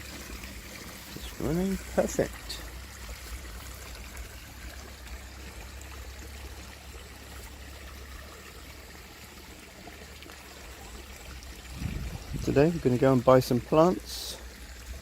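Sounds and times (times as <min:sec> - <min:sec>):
water trickling and splashing: 0:00.0 - 0:15.0
low rumble: 0:11.7 - 0:12.5.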